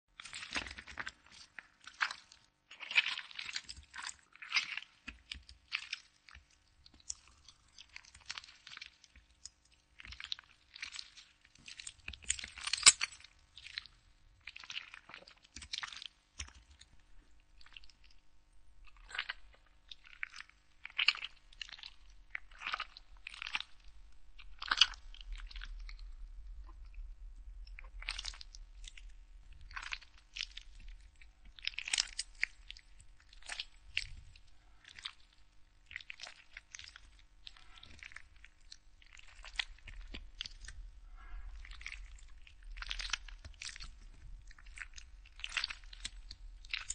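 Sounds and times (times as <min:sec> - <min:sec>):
tomato squelching: 0:29.7 - 0:46.9.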